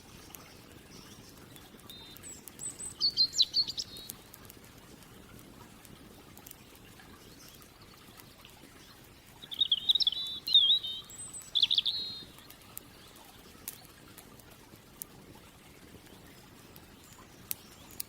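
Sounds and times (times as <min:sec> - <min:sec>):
campfire crackling: 0:00.0 - 0:18.0
songbird warbling: 0:00.4 - 0:04.2, 0:09.4 - 0:12.4.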